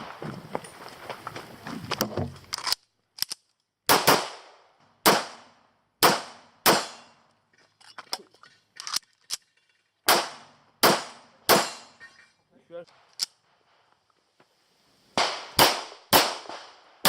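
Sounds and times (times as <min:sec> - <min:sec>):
pistol shots with echo: 0:03.9 - 0:05.4, 0:06.0 - 0:07.2, 0:10.1 - 0:11.9, 0:15.2 - 0:16.8.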